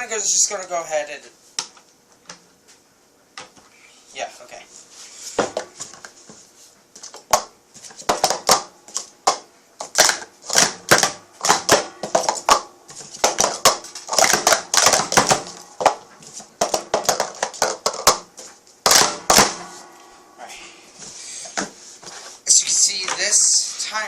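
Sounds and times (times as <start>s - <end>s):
plastic cups clacking: 7.2s - 19.6s.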